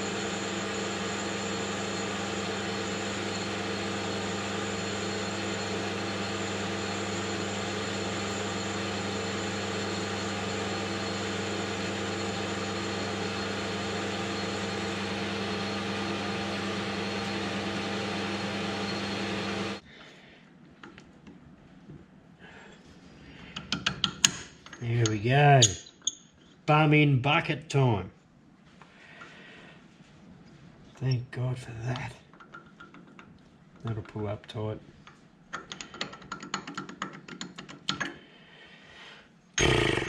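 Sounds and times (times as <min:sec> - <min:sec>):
metal lathe running: 0:00.0 - 0:19.8.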